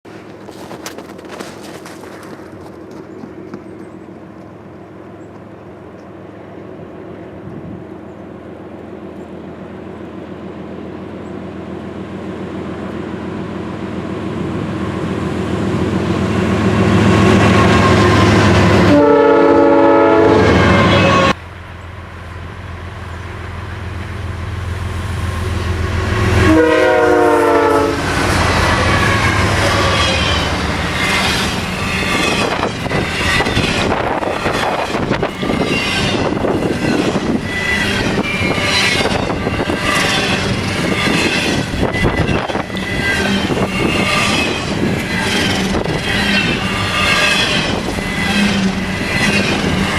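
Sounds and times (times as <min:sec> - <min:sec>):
diesel locomotive engine rumble: 0:00.0 - 0:49.9
locomotive air horn: 0:17.1 - 0:21.4, 0:25.6 - 0:49.9.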